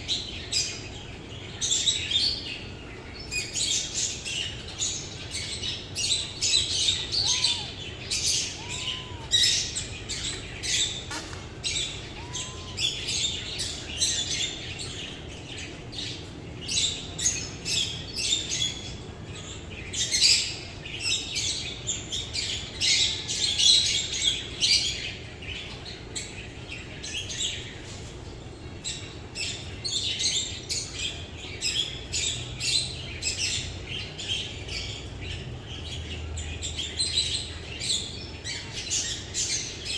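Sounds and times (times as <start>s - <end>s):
small birds chirping: 0.0s - 39.9s
lower arched bird calls: 6.2s - 13.8s.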